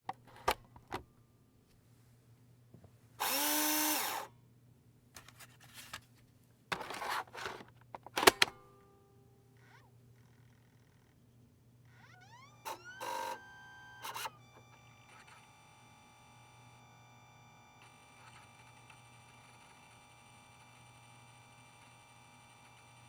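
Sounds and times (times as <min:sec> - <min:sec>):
faint hum of drive running: 0:08.5 - 0:23.0
disk drive whirring: 0:09.6 - 0:23.0.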